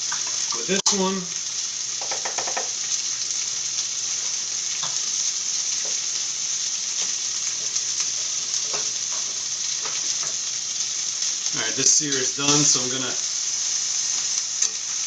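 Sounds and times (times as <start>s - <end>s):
meat sizzling in a pan: 0.0s - 15.0s.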